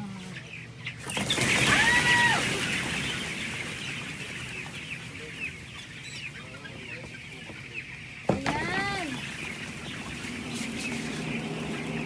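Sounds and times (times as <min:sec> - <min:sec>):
chickens chattering: 0:00.0 - 0:12.0
wings flapping: 0:01.0 - 0:03.8
chicken squawk: 0:01.2 - 0:04.6.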